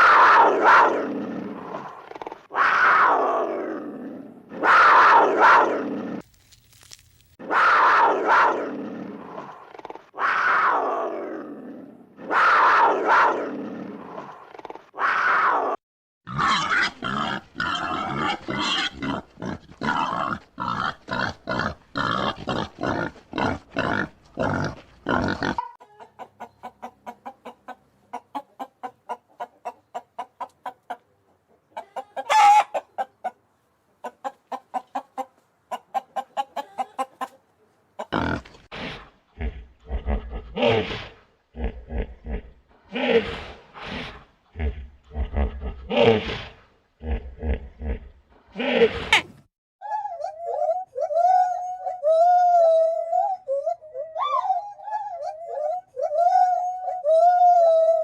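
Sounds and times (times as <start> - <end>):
clucking-like pulses: 19.9 - 33.4, 34.0 - 37.4.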